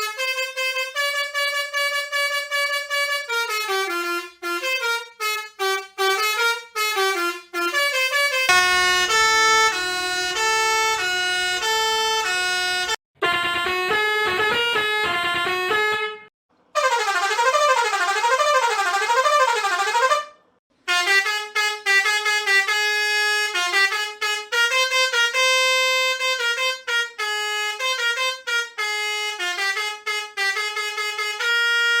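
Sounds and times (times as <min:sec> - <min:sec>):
musical truck air horn: 0:00.0 - 0:32.0
siren-like swooping horn tone: 0:08.5 - 0:13.0, 0:16.8 - 0:20.4.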